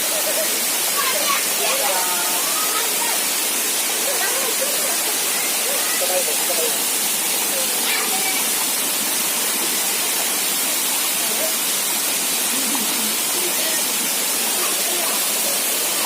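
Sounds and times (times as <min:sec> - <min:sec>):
waterfall pouring and splashing: 0:00.0 - 0:16.0.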